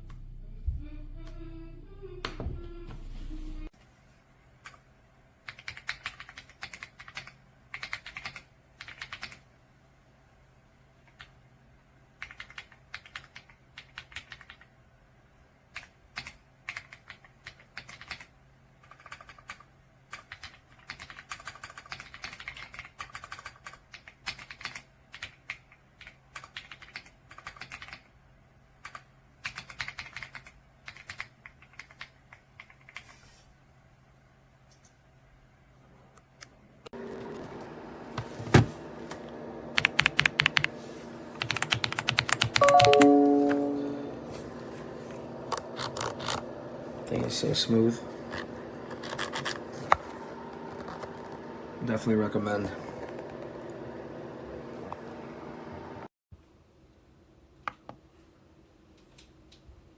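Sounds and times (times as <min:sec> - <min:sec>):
mechanical keyboard typing: 0:05.5 - 0:09.4, 0:12.2 - 0:14.7, 0:15.8 - 0:28.1, 0:28.8 - 0:33.1, 0:39.7 - 0:40.7, 0:41.4 - 0:43.7, 0:45.5 - 0:46.6, 0:48.3 - 0:50.1.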